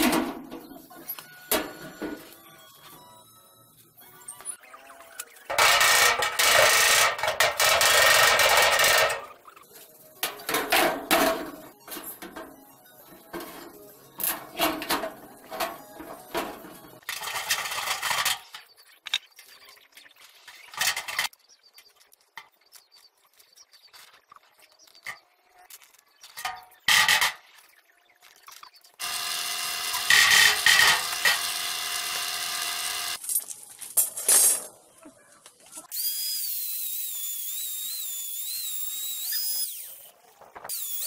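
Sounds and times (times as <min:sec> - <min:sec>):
workshop power tool: 0:05.2 - 0:09.4, 0:29.0 - 0:33.2, 0:35.9 - 0:41.0
metal parts clattering: 0:13.2 - 0:18.7, 0:33.0 - 0:34.8.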